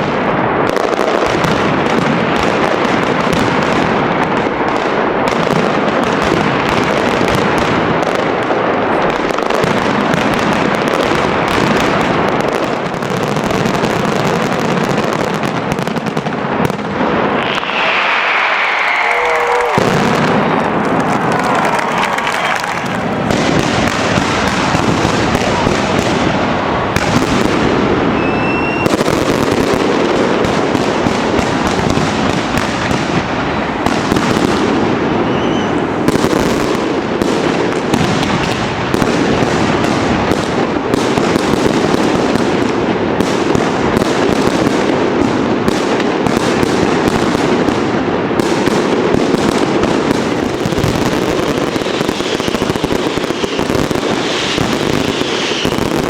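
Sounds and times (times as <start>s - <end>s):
firecracker bangs crackling: 0.0s - 56.0s
firework whistles: 17.2s - 24.1s, 28.0s - 29.3s, 35.1s - 36.2s, 50.6s - 56.0s.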